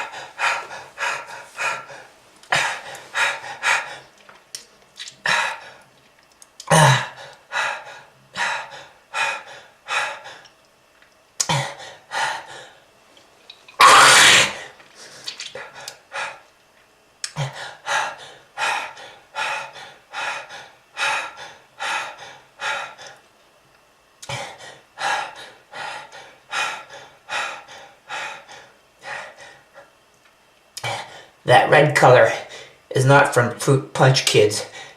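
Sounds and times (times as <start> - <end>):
person coughing: 6.7 - 7.2, 13.8 - 14.6.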